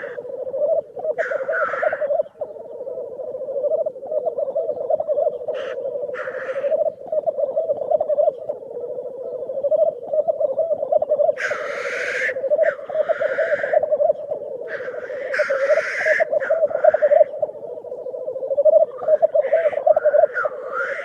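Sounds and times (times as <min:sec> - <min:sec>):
grouse high noisy calls: 0:00.0 - 0:21.0
grouse pulsed notes: 0:00.0 - 0:21.0.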